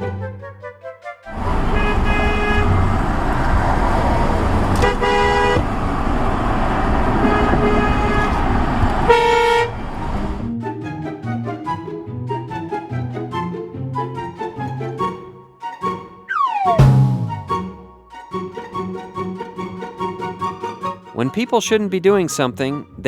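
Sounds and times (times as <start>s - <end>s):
background music: 0.0s - 1.9s, 10.4s - 23.0s
traffic and engine noise: 1.3s - 10.4s
car horns honking: 1.4s - 3.3s, 4.8s - 5.7s, 7.2s - 10.0s.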